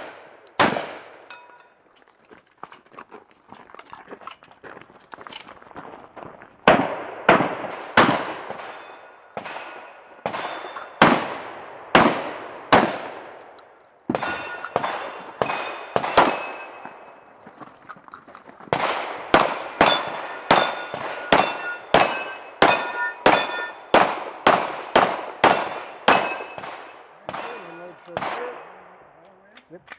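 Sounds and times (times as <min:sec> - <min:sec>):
rapid gunshots: 0:06.6 - 0:13.3, 0:14.1 - 0:16.8, 0:18.7 - 0:28.7
steel targets ringing: 0:08.6 - 0:11.0, 0:14.2 - 0:17.3, 0:19.7 - 0:23.9, 0:25.4 - 0:28.7.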